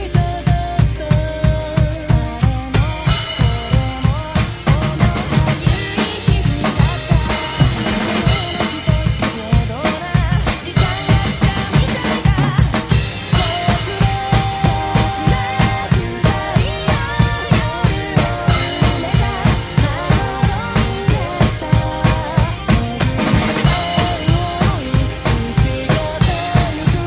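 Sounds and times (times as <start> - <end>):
acoustic drum kit beat: 0.0 - 27.0
melodic lead line: 0.0 - 27.0
rock backing track: 0.0 - 27.0.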